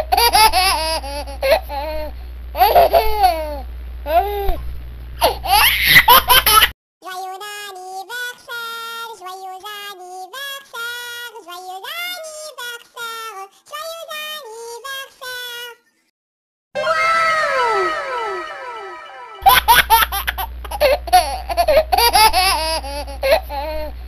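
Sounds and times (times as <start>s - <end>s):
baby laughing and squealing: 0.0s - 2.0s, 2.6s - 4.4s, 5.2s - 6.7s, 16.8s - 23.9s
high voice singing children's tune: 7.0s - 15.8s, 16.8s - 19.6s.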